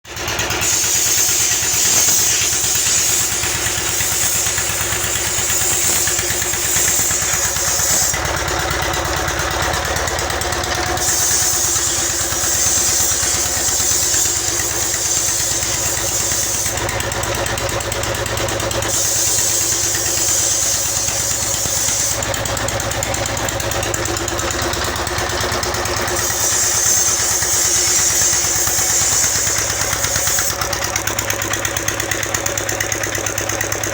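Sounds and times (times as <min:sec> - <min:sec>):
diesel engine running: 0:00.0 - 0:33.9
high hiss: 0:00.7 - 0:08.2, 0:10.9 - 0:16.8, 0:18.8 - 0:22.2, 0:25.6 - 0:30.6.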